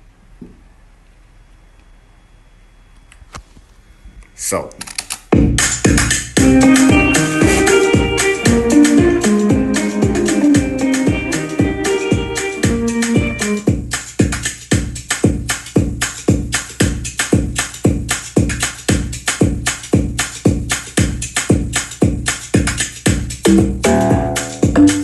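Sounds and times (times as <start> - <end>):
programmed drum beat: 5.3 - 25.0
melodic synth part: 6.4 - 13.6, 23.5 - 25.0.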